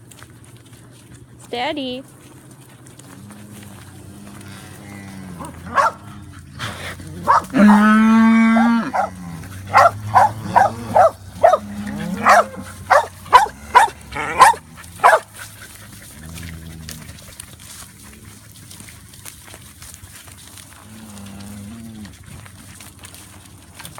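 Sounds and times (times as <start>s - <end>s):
cattle mooing: 3.0s - 17.3s, 20.7s - 22.2s
dog barking: 5.7s - 6.0s, 7.2s - 7.9s, 8.5s - 15.3s.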